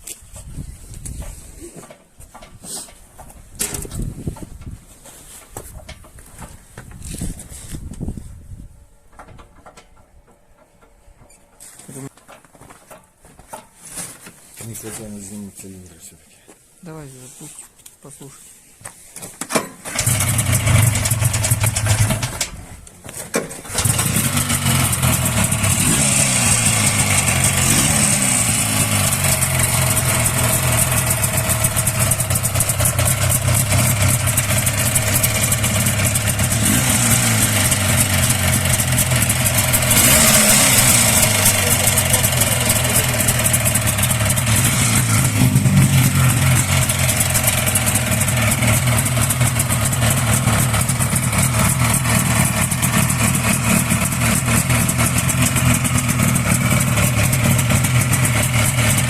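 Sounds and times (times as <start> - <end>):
snowmobile engine starting and running: 19.8 - 59.0
engine knock: 20.0 - 22.4, 23.8 - 59.0.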